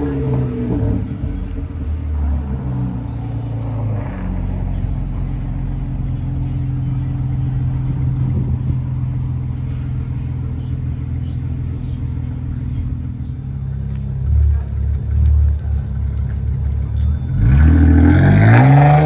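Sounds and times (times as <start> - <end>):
car engine droning: 0.0 - 19.0.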